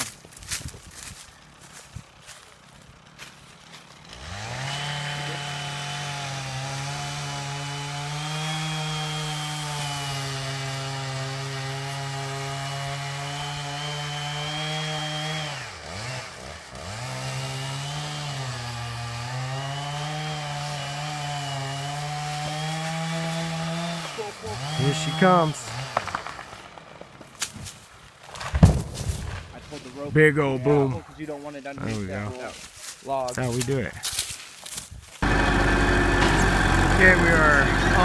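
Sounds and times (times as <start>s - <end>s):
chainsaw cutting wood: 3.6s - 27.7s, 35.2s - 38.0s.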